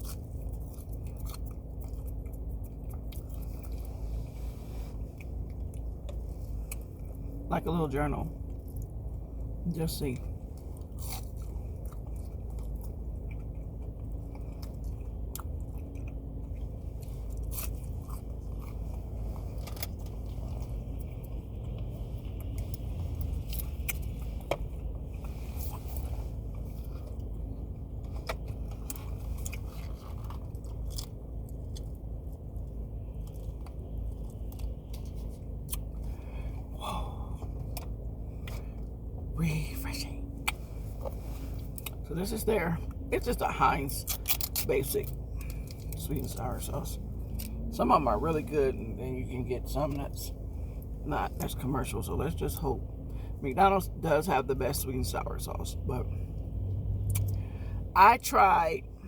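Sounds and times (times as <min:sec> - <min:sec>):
chewing crunchy fried food: 0:00.0 - 0:07.5, 0:08.2 - 0:39.3, 0:40.3 - 0:42.1, 0:44.0 - 0:47.7, 0:56.1 - 0:57.5
low hum: 0:00.0 - 0:59.0.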